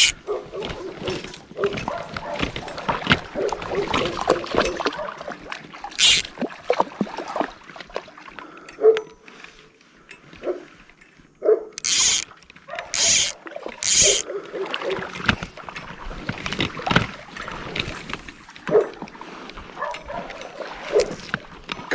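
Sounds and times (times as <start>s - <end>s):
water sloshing: 0.0s - 8.2s.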